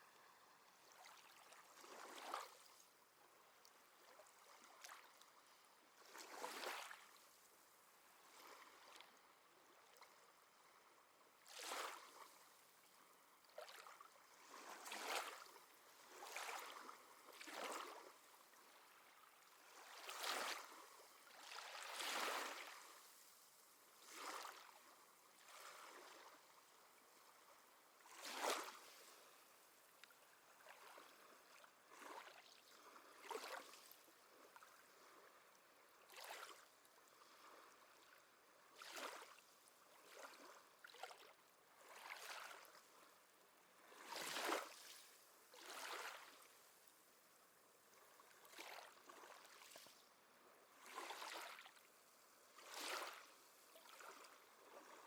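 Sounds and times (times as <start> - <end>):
small waves splashing at shore: 0.0 - 55.0
soft hiss of water: 11.7 - 38.6.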